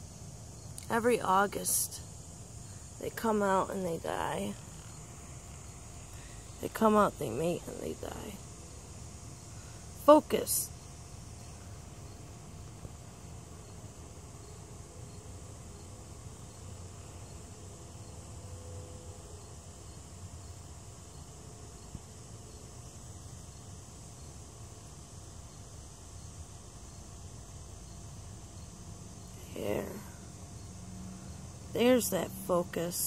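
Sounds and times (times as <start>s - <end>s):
insect chorus chirping: 0.0s - 33.0s.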